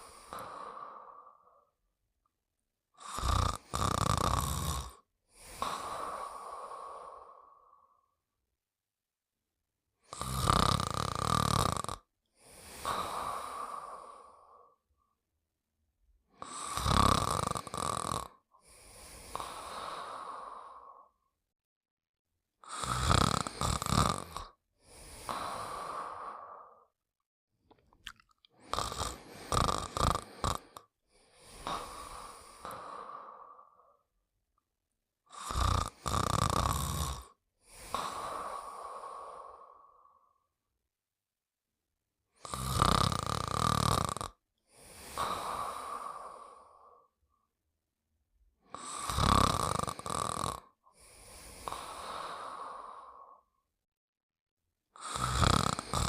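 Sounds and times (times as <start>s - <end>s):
cartoon character snoring: 3.0s - 6.6s, 10.0s - 14.3s, 16.4s - 21.2s, 22.6s - 26.9s, 28.6s - 34.0s, 35.3s - 40.2s, 42.4s - 47.1s, 48.7s - 53.6s, 55.0s - 56.0s.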